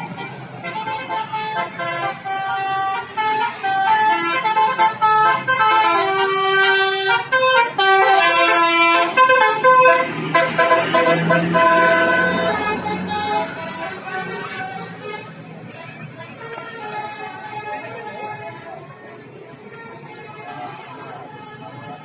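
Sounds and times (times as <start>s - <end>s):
bus horn playing melody: 0.0s - 22.0s.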